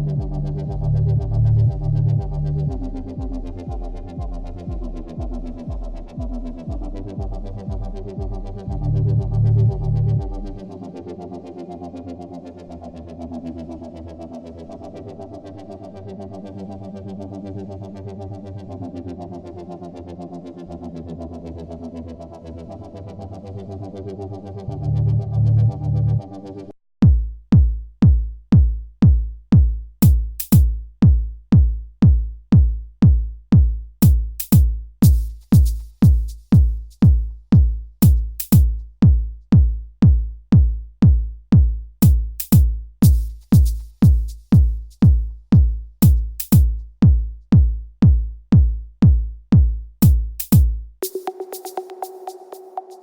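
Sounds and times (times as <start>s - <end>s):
steady kick-drum beat: 0.0s - 10.4s, 27.0s - 53.0s
electronic dance music: 30.0s - 30.6s, 34.0s - 38.7s, 42.0s - 46.7s, 50.0s - 53.0s
sharp hi-hat or clap hits: 30.0s - 30.7s, 34.0s - 38.8s, 42.0s - 46.7s, 50.0s - 53.0s.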